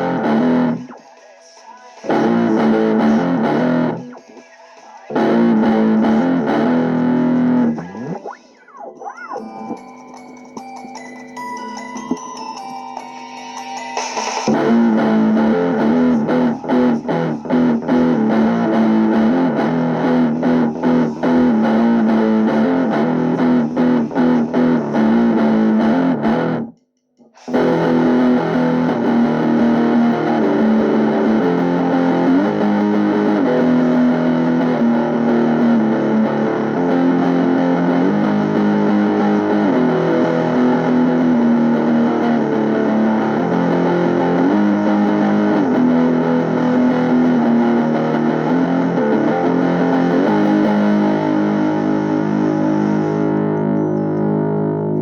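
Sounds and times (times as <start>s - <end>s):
distorted electric guitar: 0.0s - 1.0s, 2.0s - 4.3s, 5.1s - 26.8s, 27.4s - 55.0s.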